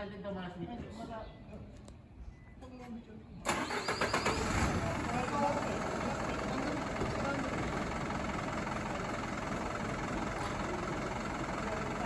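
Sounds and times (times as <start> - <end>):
fire engine idling: 3.5 - 12.0.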